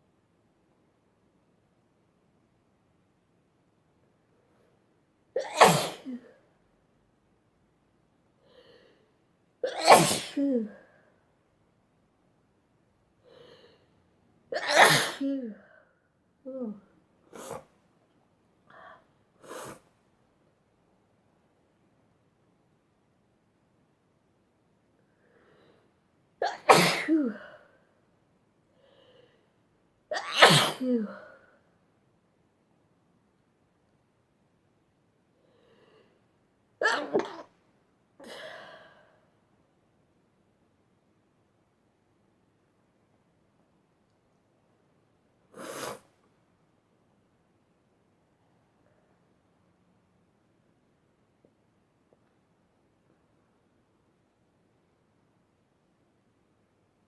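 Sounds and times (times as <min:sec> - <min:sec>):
girl sneezing: 0:05.4 - 0:06.4, 0:09.6 - 0:10.9, 0:14.6 - 0:15.7, 0:26.4 - 0:27.6, 0:30.1 - 0:31.3, 0:36.8 - 0:37.5, 0:45.6 - 0:46.1.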